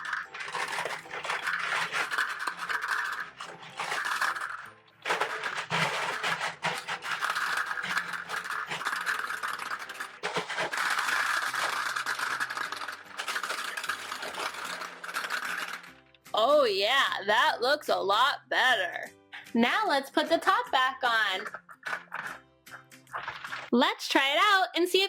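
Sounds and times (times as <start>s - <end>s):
gumballs clattering through funnel: 0.0s - 16.3s, 20.0s - 23.7s.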